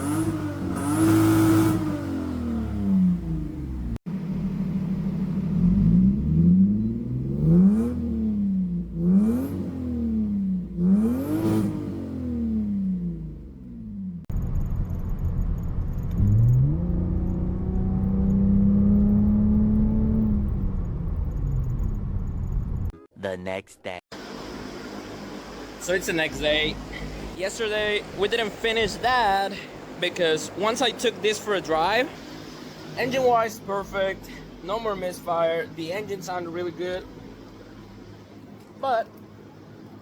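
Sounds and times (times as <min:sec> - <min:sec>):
car engine revving: 0:00.0 - 0:22.9.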